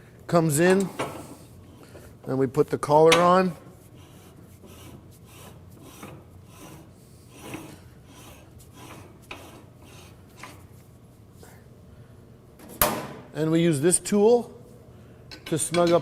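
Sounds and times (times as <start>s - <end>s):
metal collar scraping on threads: 3.9s - 10.7s.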